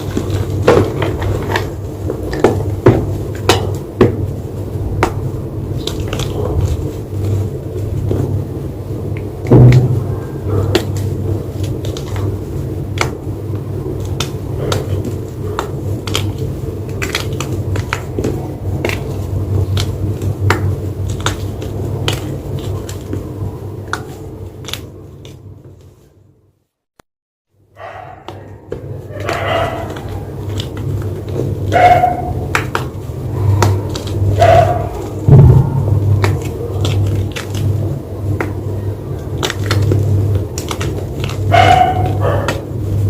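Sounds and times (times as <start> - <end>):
chalk crunching and crumbling: 28.7 - 43.0
low rumble: 33.1 - 36.9.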